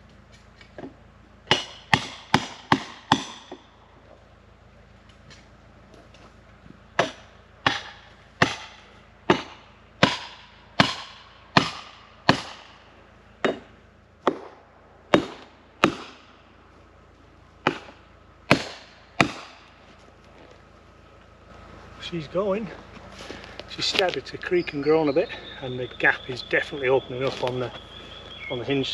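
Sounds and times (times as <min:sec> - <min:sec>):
hammer striking wedge: 0:01.5 - 0:03.6, 0:07.0 - 0:12.7, 0:13.4 - 0:16.3, 0:17.6 - 0:19.6.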